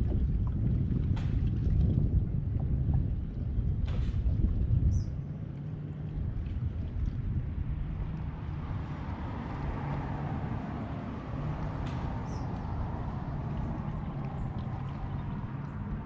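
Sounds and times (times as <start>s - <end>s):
water noise: 0.0s - 16.0s
watercraft engine humming: 0.0s - 16.0s.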